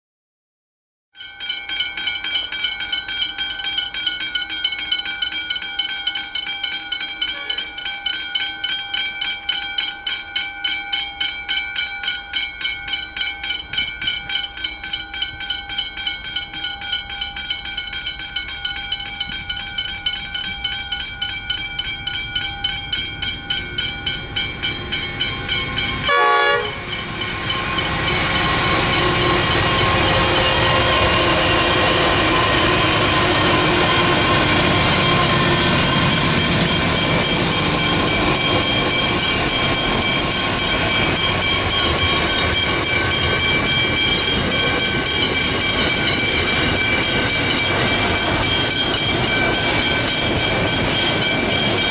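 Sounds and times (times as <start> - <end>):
diesel locomotives approaching: 1.2 - 51.9
level crossing warning bell ringing: 1.2 - 51.9
train horn blast: 26.0 - 26.9.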